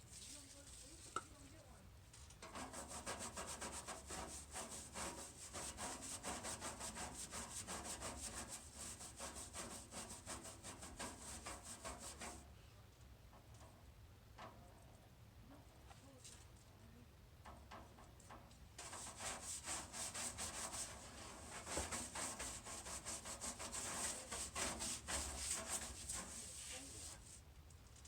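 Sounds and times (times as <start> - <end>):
hand rubbing on a surface: 2.6 - 12.4, 18.8 - 27.4.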